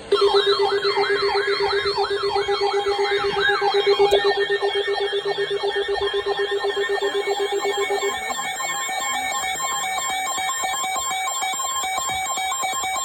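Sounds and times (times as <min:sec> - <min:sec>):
low pulsing tone: 0:00.0 - 0:09.4
electronic alarm tones beeping: 0:00.0 - 0:13.0.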